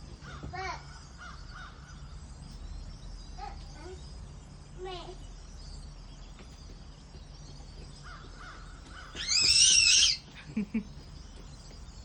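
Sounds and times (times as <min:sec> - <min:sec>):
loud harsh bird call: 0:08.1 - 0:10.3.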